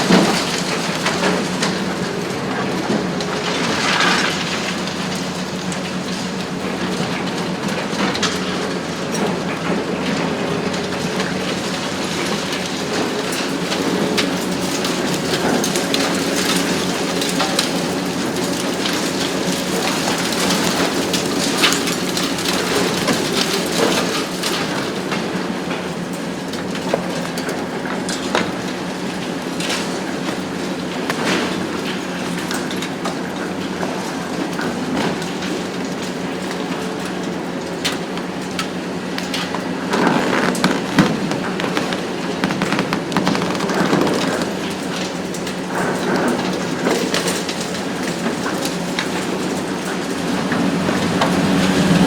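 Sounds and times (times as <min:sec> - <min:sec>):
concrete cracking and crunching: 0:39.6 - 0:45.2
debris falling: 0:40.0 - 0:45.1.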